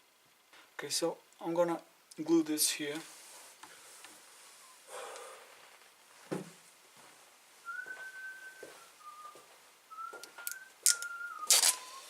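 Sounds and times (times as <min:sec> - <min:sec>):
person whistling: 0:07.6 - 0:12.0
sharp clicks: 0:10.2 - 0:11.8.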